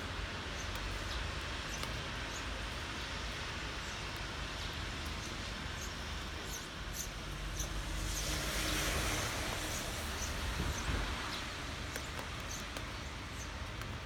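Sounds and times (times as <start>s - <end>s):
raindrops ticking: 0.0s - 14.0s
steady rain hiss: 0.0s - 14.0s.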